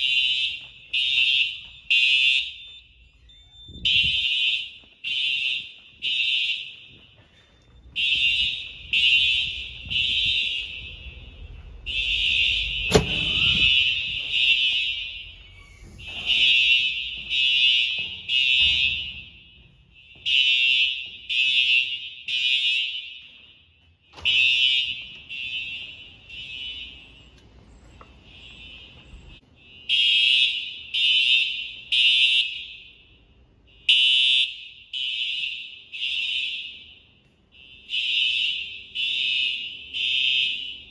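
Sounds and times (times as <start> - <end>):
fire alarm horns blasting: 0.0 - 40.9
sharp knock: 12.9 - 13.8.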